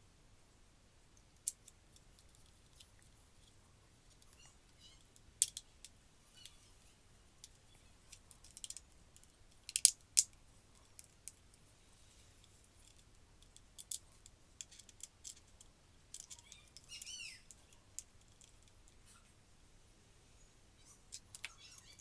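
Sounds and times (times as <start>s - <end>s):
squeaky chirp: 4.4s - 5.0s, 16.3s - 17.8s, 20.8s - 22.0s
plastic parts clicking together: 5.0s - 5.7s, 7.4s - 11.4s, 12.8s - 19.0s, 21.1s - 22.0s.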